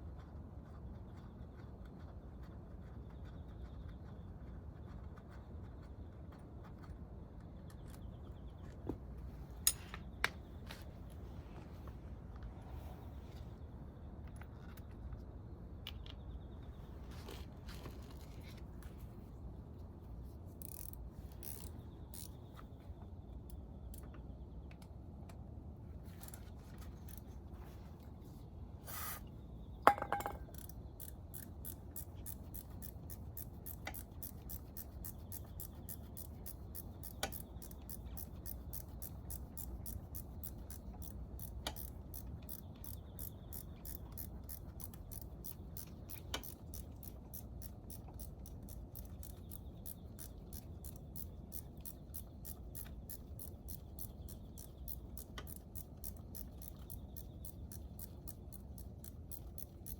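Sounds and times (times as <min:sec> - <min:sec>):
fast mechanical clicking: 0:20.5 - 0:22.5, 0:30.4 - 0:59.9.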